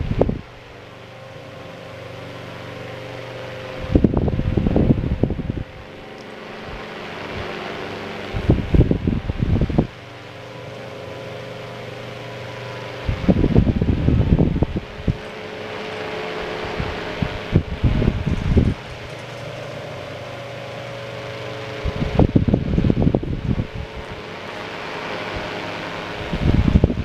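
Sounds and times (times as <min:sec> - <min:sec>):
fan motor humming: 0:00.0 - 0:27.0
low rumbling bursts: 0:00.0 - 0:27.0
rush of air: 0:03.7 - 0:05.8, 0:11.2 - 0:15.7.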